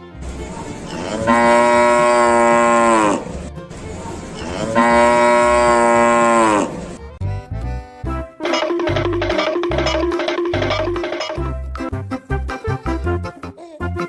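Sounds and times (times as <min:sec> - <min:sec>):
music: 0:00.0 - 0:05.7, 0:06.8 - 0:14.0
cow mooing: 0:00.9 - 0:03.4, 0:04.4 - 0:07.0.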